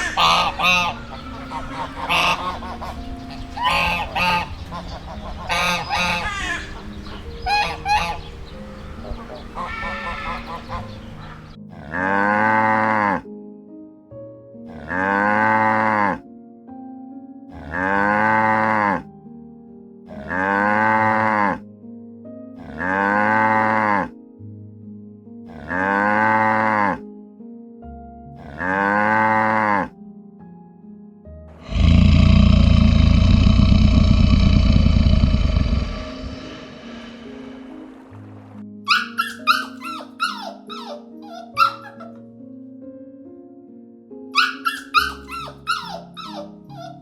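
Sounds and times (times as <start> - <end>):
cow mooing: 0.0 - 6.9, 11.7 - 13.3, 14.7 - 16.2, 17.5 - 19.0, 20.1 - 21.6, 22.6 - 24.1, 25.5 - 27.0, 28.4 - 29.9, 31.6 - 36.6
harsh animal call: 0.0 - 13.3, 31.6 - 37.7, 38.9 - 42.2, 44.4 - 47.0
soft background music: 0.0 - 47.0.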